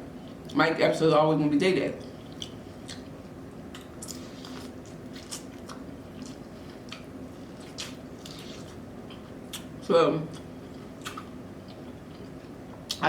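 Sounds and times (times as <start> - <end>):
person chewing food: 2.0 - 13.0.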